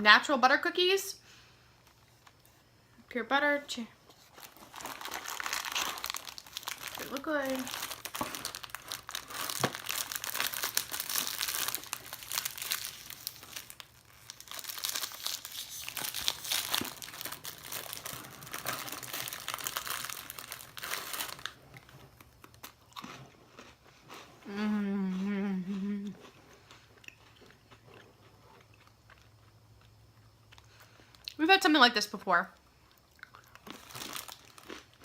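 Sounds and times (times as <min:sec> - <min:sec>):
plastic wrapper crinkling: 0:04.1 - 0:22.8, 0:33.5 - 0:35.0.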